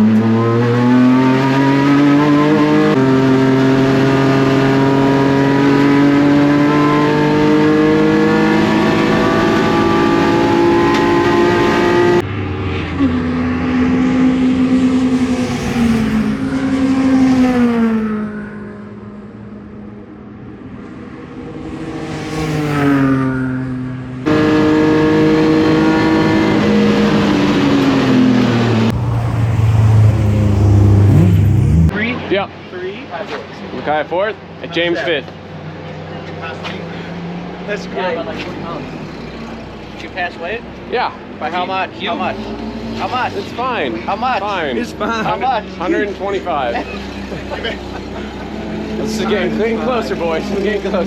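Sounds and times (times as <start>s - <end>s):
racing engine at high revs: 0.0s - 19.1s, 20.8s - 32.0s
race cars passing by: 0.0s - 32.4s, 35.6s - 51.0s.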